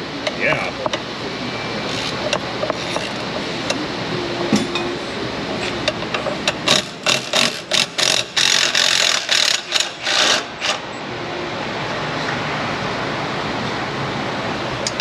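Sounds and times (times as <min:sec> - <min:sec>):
impact wrench hammering: 0:06.4 - 0:10.8.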